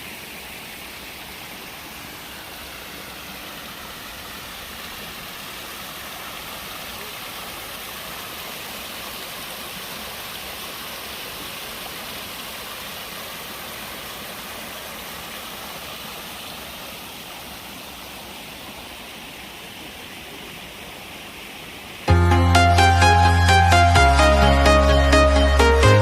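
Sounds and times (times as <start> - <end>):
running water: 0.0 - 22.1
loud electronic music with beat: 22.1 - 26.0.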